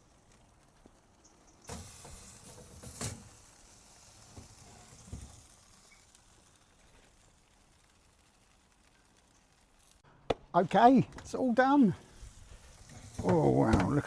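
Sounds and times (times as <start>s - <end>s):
food sizzling: 0.0s - 10.1s, 11.6s - 14.0s.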